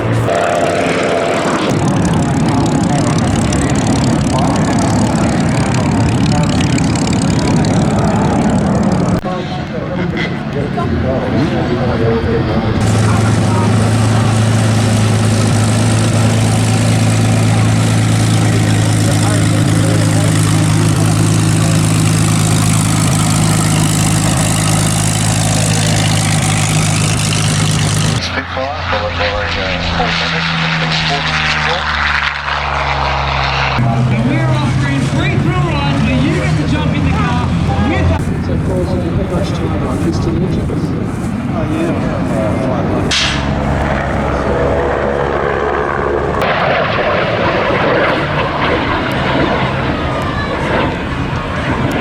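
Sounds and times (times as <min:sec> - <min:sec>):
large engine idling: 0:00.0 - 0:52.0.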